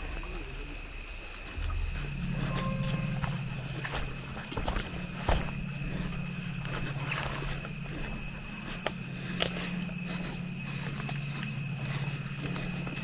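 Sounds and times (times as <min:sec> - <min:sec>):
insects droning: 0:00.0 - 0:13.0
low hum: 0:00.0 - 0:13.0
footsteps crunching on trail: 0:01.4 - 0:13.0.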